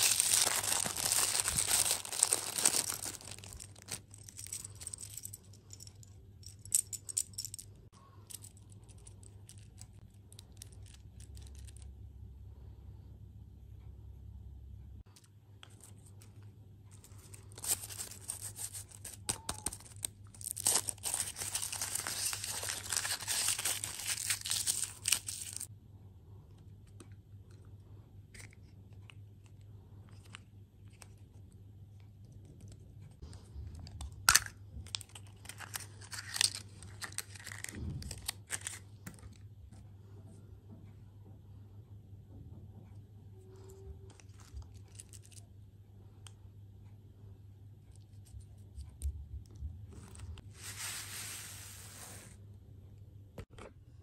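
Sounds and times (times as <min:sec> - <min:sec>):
food wrapper tearing and crinkling: 0:00.0 - 0:04.4, 0:17.4 - 0:25.7, 0:34.2 - 0:38.8
small clicks and handling noises: 0:00.1 - 0:12.1, 0:15.0 - 0:25.7, 0:26.5 - 0:39.9, 0:43.4 - 0:46.4.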